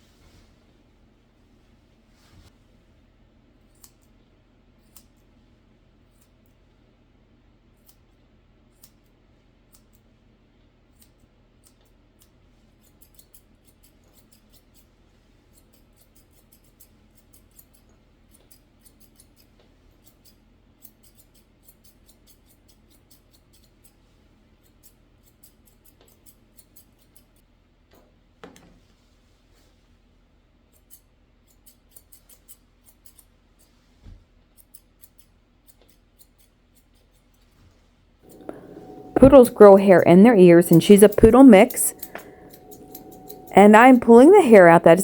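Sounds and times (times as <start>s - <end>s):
scissors snipping fur: 3.7s - 4.1s, 4.8s - 5.2s, 8.7s - 9.1s, 10.9s - 14.9s, 15.5s - 23.9s, 24.6s - 27.4s, 30.7s - 33.7s, 34.5s - 37.4s, 38.3s - 39.6s, 40.8s - 43.5s.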